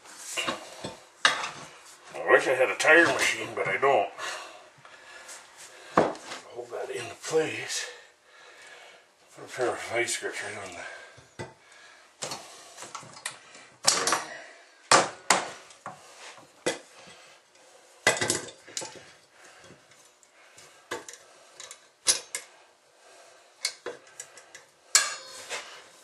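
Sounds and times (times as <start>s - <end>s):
metal tools clanking on wheel rim: 24.9s - 25.8s.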